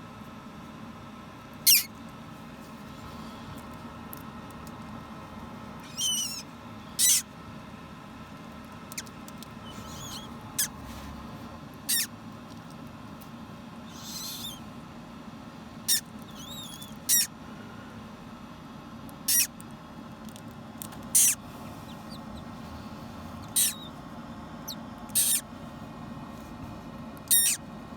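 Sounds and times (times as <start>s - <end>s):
steady low hum: 0.0s - 27.9s
parrot chick squeaking: 1.6s - 1.9s, 5.8s - 7.3s, 8.9s - 10.8s, 11.8s - 12.1s, 13.9s - 14.6s, 15.9s - 17.3s, 19.2s - 19.5s, 21.1s - 22.5s, 23.4s - 24.0s, 24.6s - 25.4s, 27.2s - 27.6s.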